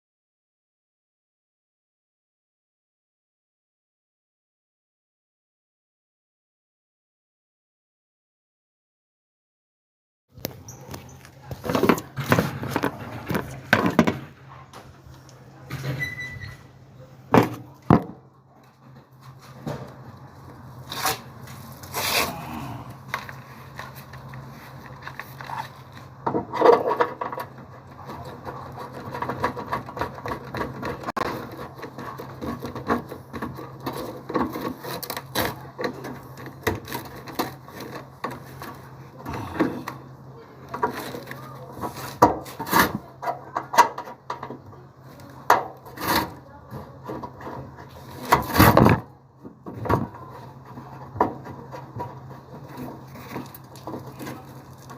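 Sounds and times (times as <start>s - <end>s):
knocks and scrapes of handiwork: 10.5s - 14.4s, 20.8s - 22.4s, 23.1s - 40.1s, 40.7s - 54.9s.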